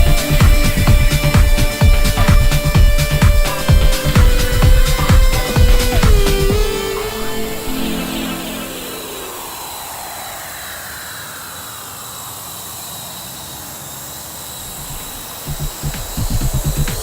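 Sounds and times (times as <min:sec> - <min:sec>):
electronic dance beat: 0:00.0 - 0:09.4, 0:15.5 - 0:17.0
falling sweep effect: 0:00.0 - 0:13.6.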